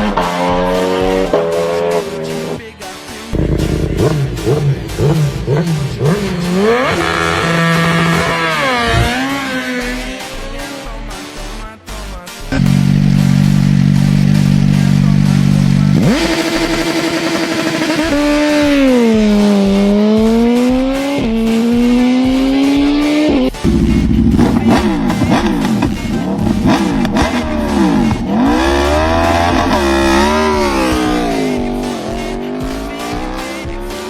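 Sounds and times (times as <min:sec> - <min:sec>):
motorcycle engine revving: 0:00.0 - 0:02.7, 0:03.4 - 0:11.0, 0:12.4 - 0:34.0
overlapping engine notes sweeping: 0:00.0 - 0:34.0.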